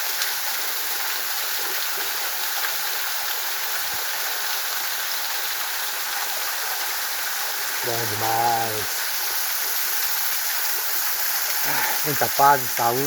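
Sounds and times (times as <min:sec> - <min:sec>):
water rushing over rock: 0:07.6 - 0:09.1.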